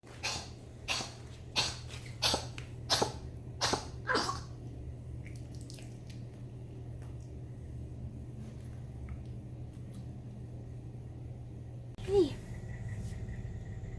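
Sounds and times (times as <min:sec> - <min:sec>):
dog coughing: 0:00.1 - 0:04.6.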